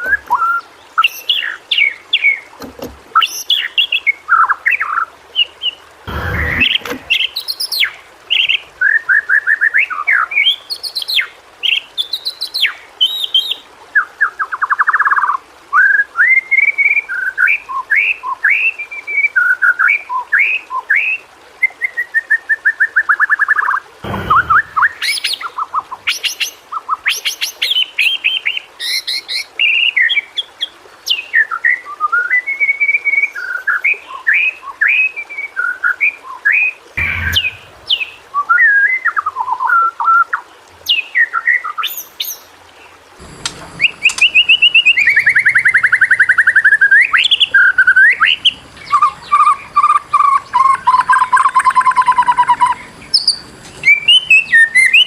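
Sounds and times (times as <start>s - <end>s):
bird singing whistled phrases: 0.0s - 1.6s, 31.7s - 40.3s, 43.4s - 55.0s
bird rattling trills: 43.2s - 55.0s.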